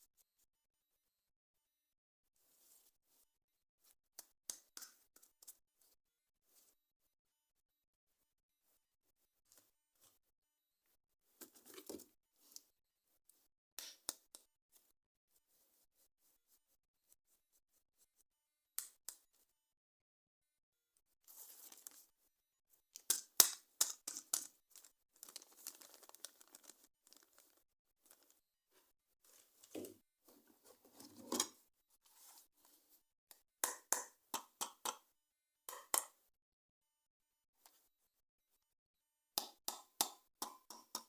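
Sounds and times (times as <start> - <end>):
packaging clicks and taps: 23.0 - 27.5
packaging rustling and tearing: 24.7 - 28.3.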